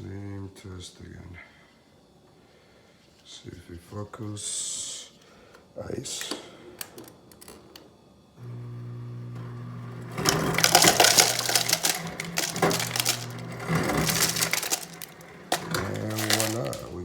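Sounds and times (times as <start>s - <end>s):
motor humming: 8.4s - 17.0s
crushed ice grinding and clattering: 9.4s - 17.0s.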